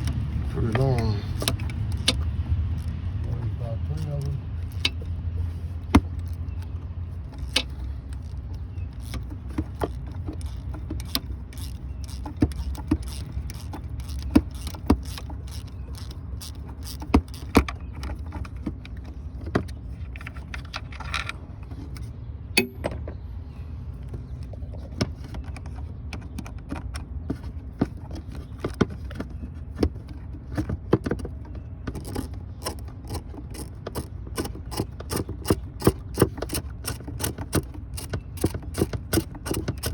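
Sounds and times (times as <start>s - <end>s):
hand ratchet clicking: 7.4s - 18.2s, 32.0s - 39.9s.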